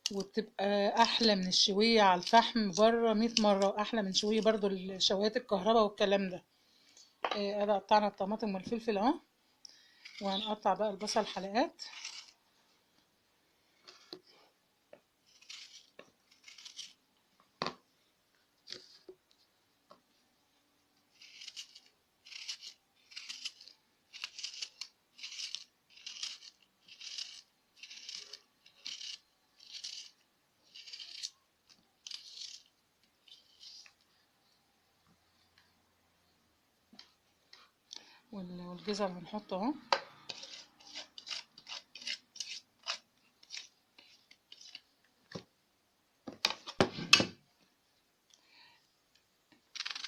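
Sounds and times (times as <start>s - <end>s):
knife slicing onion: 11.9s - 12.4s, 21.1s - 31.4s, 40.0s - 43.8s.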